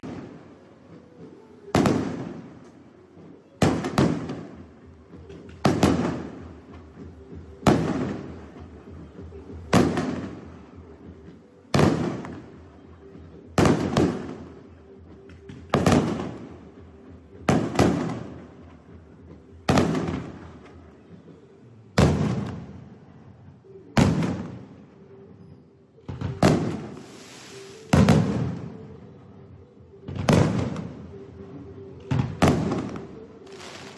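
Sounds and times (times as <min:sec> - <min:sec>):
fireworks bangs: 0:26.4 - 0:28.8, 0:32.1 - 0:33.9.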